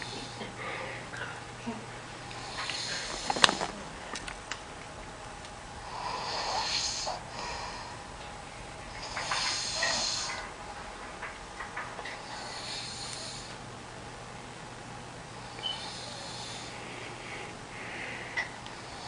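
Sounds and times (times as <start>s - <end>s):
man snoring: 0.0s - 1.1s, 2.3s - 4.0s, 5.8s - 8.0s, 8.9s - 10.5s, 12.2s - 13.6s, 15.3s - 19.0s.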